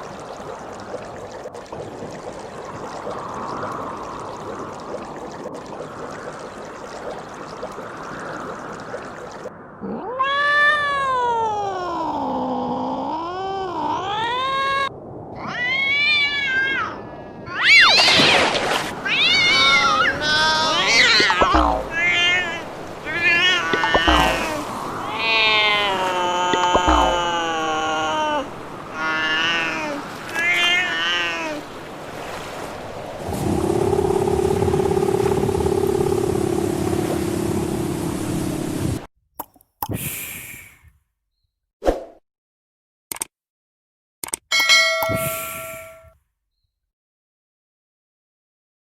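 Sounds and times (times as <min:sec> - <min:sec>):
cat yowling: 0:09.8 - 0:12.6, 0:13.2 - 0:18.4, 0:19.0 - 0:31.6
splash into water: 0:17.6 - 0:27.7
rumbling noise: 0:21.4 - 0:22.1, 0:33.2 - 0:39.0
short clicks: 0:43.1 - 0:43.3, 0:44.2 - 0:44.6.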